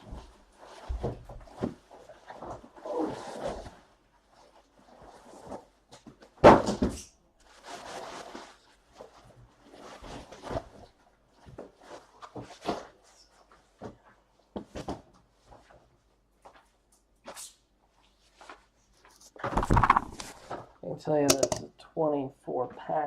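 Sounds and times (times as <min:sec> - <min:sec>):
knocks and rustling on a table: 0:19.4 - 0:20.6.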